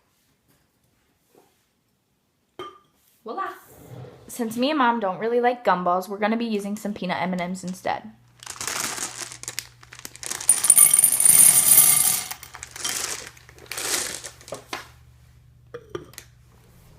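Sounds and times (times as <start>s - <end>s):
plastic bag crinkling: 8.4s - 14.6s.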